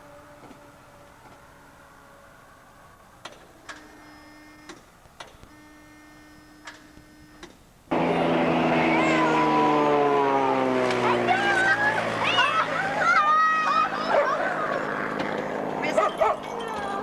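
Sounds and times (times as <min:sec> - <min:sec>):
propeller airplane engine passing: 0:07.9 - 0:17.0.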